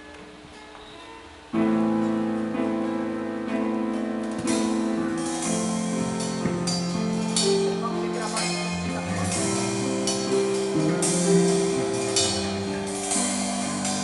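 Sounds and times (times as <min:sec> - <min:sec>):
rock band playing: 0:01.8 - 0:14.0
cymbals: 0:03.8 - 0:14.0.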